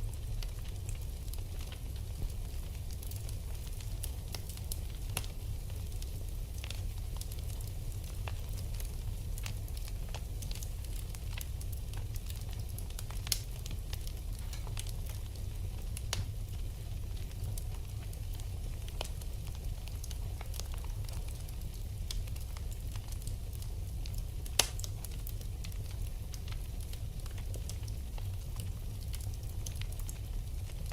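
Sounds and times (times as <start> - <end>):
wood fire crackling and popping: 0.0 - 30.9.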